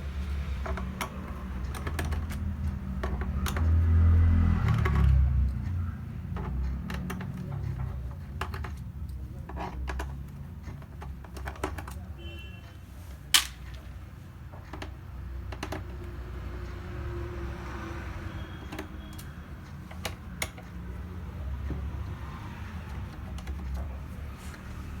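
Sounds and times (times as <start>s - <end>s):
screwdriver clicks and taps: 14.6s - 16.2s.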